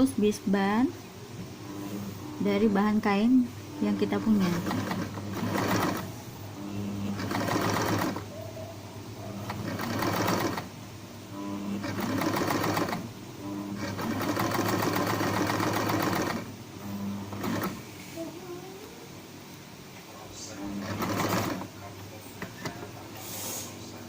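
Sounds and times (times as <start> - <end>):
sewing machine stitching: 3.8 - 6.2, 7.0 - 8.3, 9.4 - 10.7, 11.6 - 13.1, 13.7 - 16.5, 17.2 - 17.8, 20.7 - 21.7.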